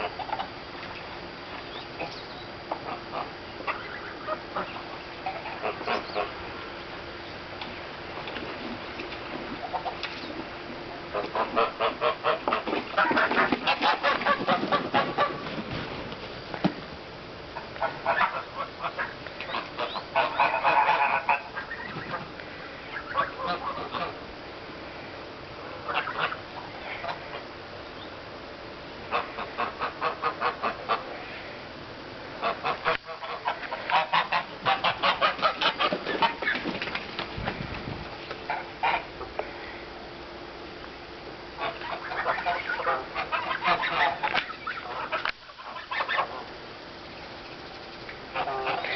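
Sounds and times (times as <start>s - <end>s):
geese honking: 0.0s - 7.3s, 8.9s - 15.6s, 17.6s - 24.3s, 25.6s - 27.6s, 29.0s - 31.5s, 32.4s - 37.1s, 38.3s - 39.7s, 41.5s - 48.9s.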